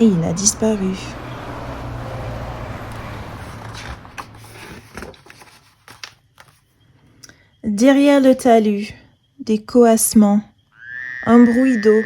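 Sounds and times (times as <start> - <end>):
car driving past: 0.0 - 4.6.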